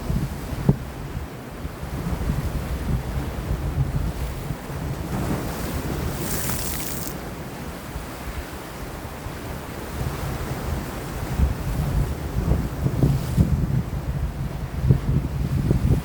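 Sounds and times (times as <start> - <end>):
wind buffeting microphone: 0.0 - 8.5, 9.4 - 16.0
sea waves washing against rocks: 4.7 - 7.8.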